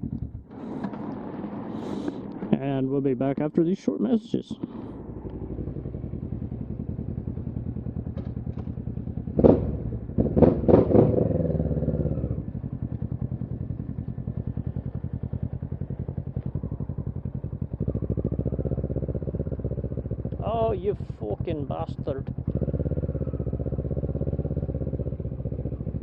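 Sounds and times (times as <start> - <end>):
motorcycle engine idling: 0.0 - 2.6, 4.5 - 26.0
sharp clattering knocks: 8.1 - 11.1.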